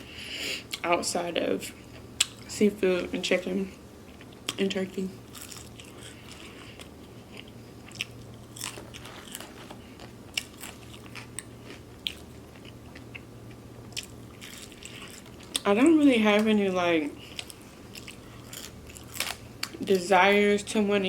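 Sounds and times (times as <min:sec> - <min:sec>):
close-miked chewing: 0:04.1 - 0:15.7, 0:17.2 - 0:19.8.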